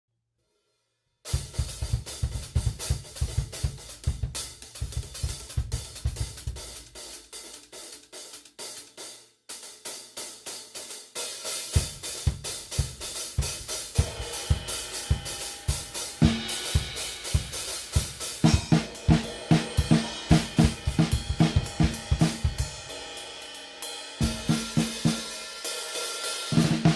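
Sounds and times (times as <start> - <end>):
drum kit playing: 1.3 - 26.9.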